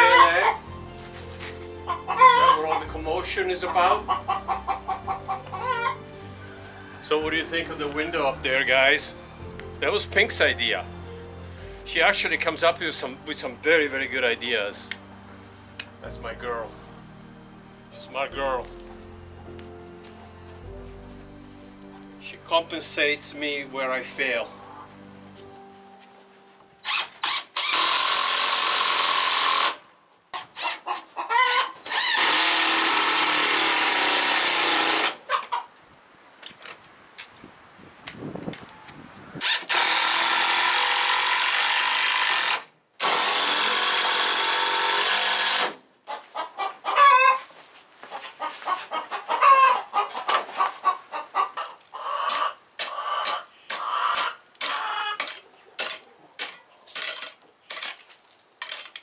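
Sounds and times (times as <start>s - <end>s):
chickens clucking: 0.0s - 8.4s, 24.4s - 25.0s, 30.4s - 31.9s, 35.1s - 35.8s, 46.0s - 57.8s
power tool running: 26.8s - 29.8s, 31.8s - 35.2s, 39.4s - 45.8s.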